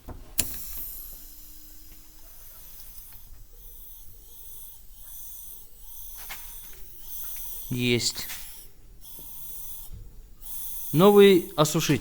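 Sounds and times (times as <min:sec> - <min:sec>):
compressed air hissing: 0:00.0 - 0:12.0.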